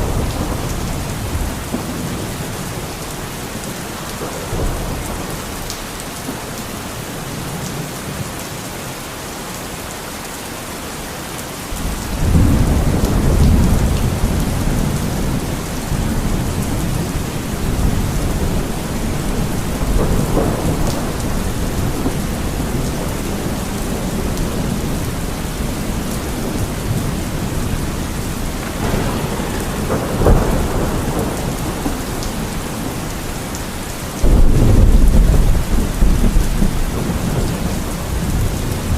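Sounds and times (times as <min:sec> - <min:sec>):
thunder rumbling: 0:00.0 - 0:03.2, 0:11.7 - 0:38.9
heavy rain falling: 0:00.0 - 0:38.9.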